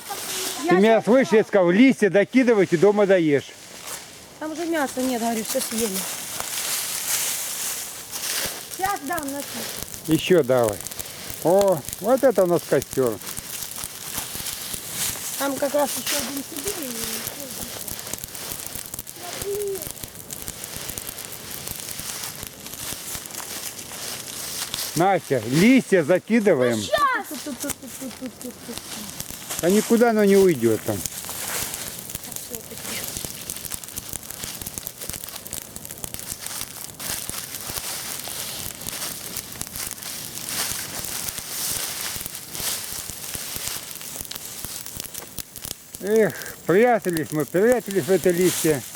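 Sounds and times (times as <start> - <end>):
fire hiss: 0.0 - 48.9
leaves crackling in bonfire: 0.0 - 48.9
faint voice: 19.2 - 19.9.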